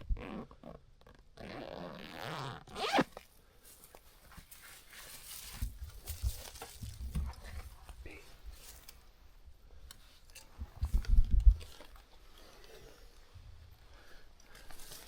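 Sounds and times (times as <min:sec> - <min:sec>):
zipper being pulled: 0:00.0 - 0:03.2
rustling: 0:00.7 - 0:09.3.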